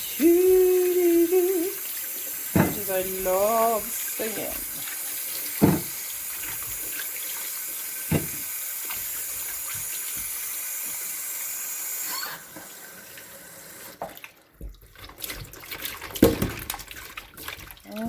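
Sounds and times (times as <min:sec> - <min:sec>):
kitchen tap running: 0:00.0 - 0:18.0
thump: 0:02.5 - 0:02.9, 0:05.6 - 0:06.0, 0:08.1 - 0:08.4.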